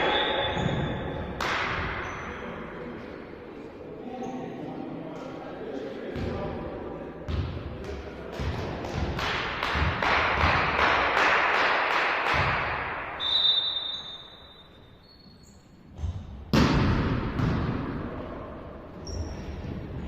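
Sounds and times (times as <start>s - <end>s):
referee's whistle: 0.0s - 1.1s, 13.2s - 15.6s
volleyball strikes echoing: 0.0s - 2.2s, 7.3s - 14.6s, 15.9s - 18.4s.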